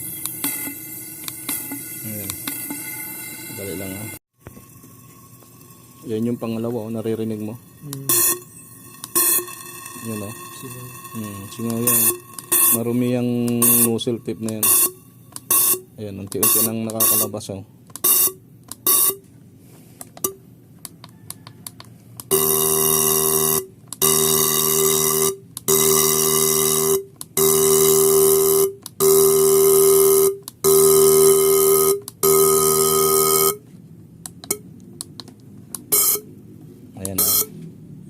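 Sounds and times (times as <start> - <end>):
fuel injector electric buzz: 6.9 - 15.8, 22.2 - 33.6, 35.8 - 36.3.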